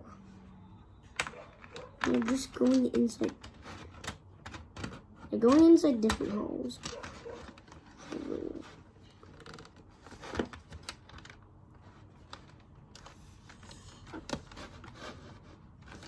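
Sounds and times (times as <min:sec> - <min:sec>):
plastic toy pieces clicking: 0:01.3 - 0:08.2.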